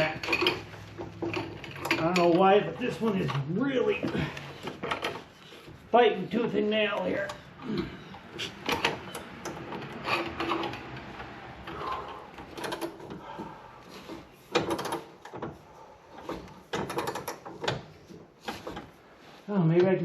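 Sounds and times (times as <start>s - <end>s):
metal clanking: 0.0s - 19.0s
ratchet clicking: 14.5s - 15.5s.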